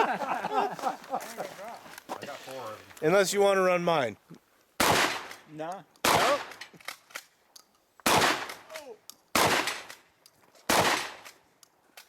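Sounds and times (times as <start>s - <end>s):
shotgun shots: 4.8s - 5.4s, 6.0s - 6.7s, 8.0s - 10.0s, 10.7s - 11.4s.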